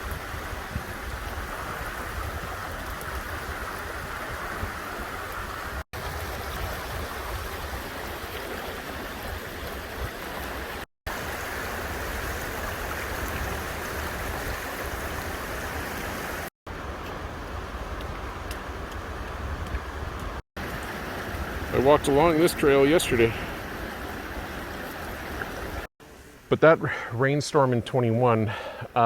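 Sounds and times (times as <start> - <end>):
flowing river water: 0.0 - 29.0.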